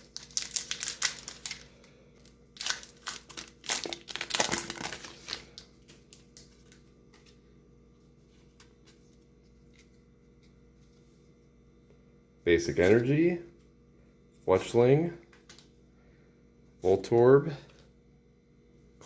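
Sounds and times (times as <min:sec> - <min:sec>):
foil wrapper crinkling and tearing: 0:00.0 - 0:06.9.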